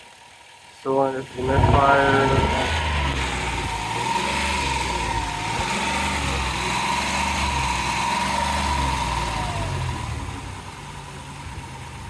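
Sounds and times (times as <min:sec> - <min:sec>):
engine idling with misfire: 0:00.0 - 0:12.0
high whine: 0:01.1 - 0:07.9.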